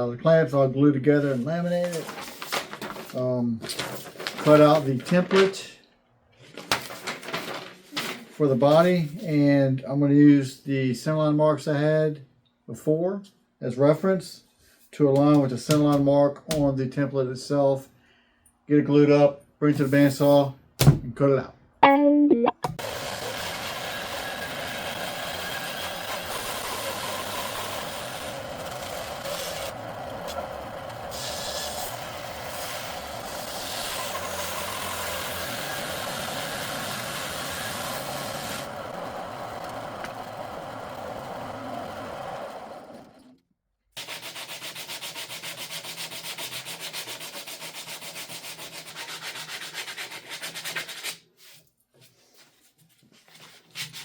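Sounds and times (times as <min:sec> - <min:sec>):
power woodworking tool whirring: 0:22.8 - 0:43.4.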